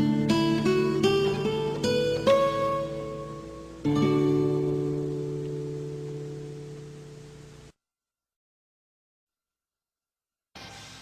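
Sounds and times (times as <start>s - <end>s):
strummed acoustic guitar: 0.0s - 7.6s.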